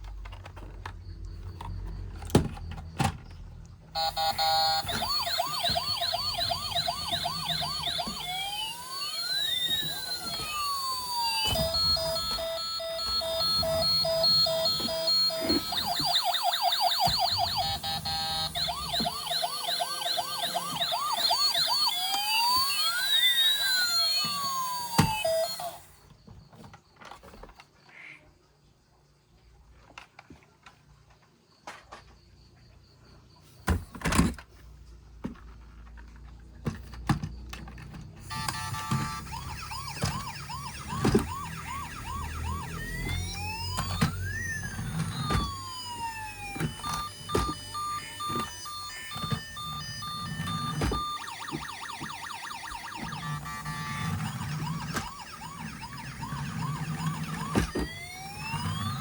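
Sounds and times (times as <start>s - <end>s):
toy electronic siren: 4.0s - 26.1s, 37.2s - 59.0s.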